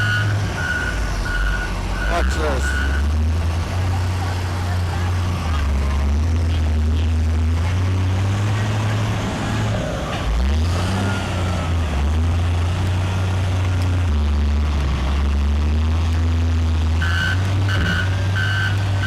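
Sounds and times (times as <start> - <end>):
diesel engine revving: 0.0 - 19.0.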